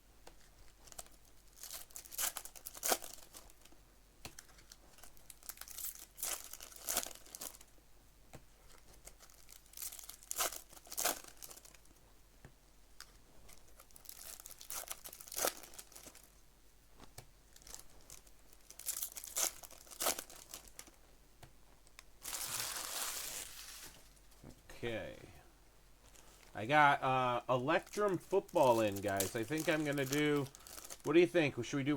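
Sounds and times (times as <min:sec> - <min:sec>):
wrapper rustling: 0:00.4 - 0:03.8, 0:04.4 - 0:07.7, 0:08.6 - 0:12.0, 0:13.0 - 0:16.4, 0:17.5 - 0:21.0, 0:22.2 - 0:24.4, 0:26.0 - 0:31.9
card pack wrappers tearing: 0:00.8 - 0:03.7, 0:04.4 - 0:07.6, 0:09.0 - 0:11.8, 0:13.6 - 0:16.3, 0:17.6 - 0:20.9, 0:22.2 - 0:24.0, 0:27.6 - 0:31.3.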